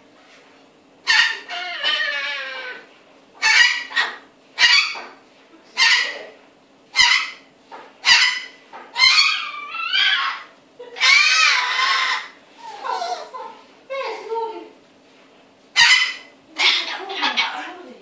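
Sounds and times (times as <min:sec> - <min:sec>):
cockatoo harsh squawks: 0:01.0 - 0:05.2, 0:05.8 - 0:06.3, 0:06.9 - 0:13.3, 0:15.8 - 0:17.7.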